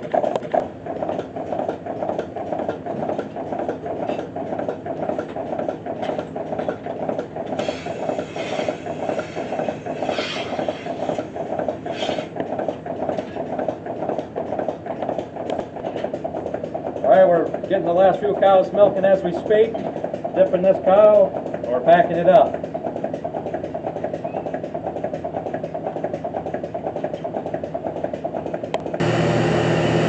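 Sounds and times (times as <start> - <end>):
milking machine pulsing: 0.0 - 30.0
air hissing: 7.6 - 11.2, 11.9 - 12.3.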